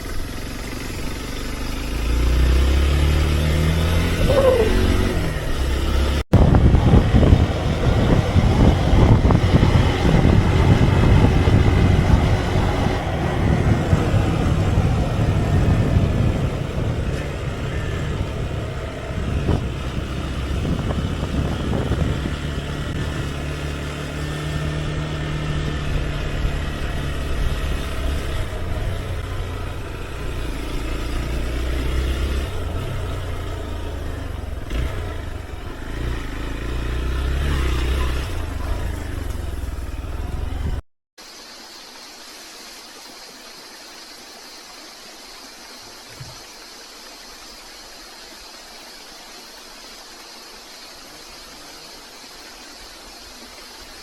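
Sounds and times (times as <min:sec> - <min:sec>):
motorcycle engine running: 0:00.0 - 0:40.8
wind and road noise: 0:00.0 - 0:54.0.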